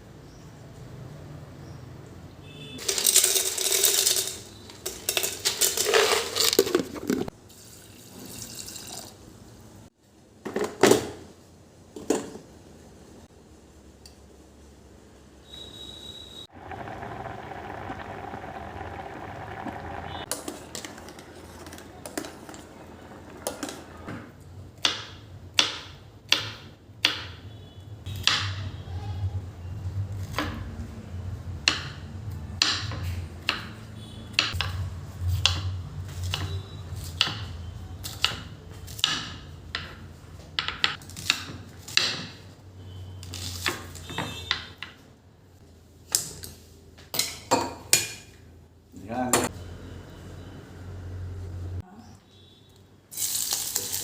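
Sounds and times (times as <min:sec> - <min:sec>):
low steady hum: 0:16.5 - 0:24.6.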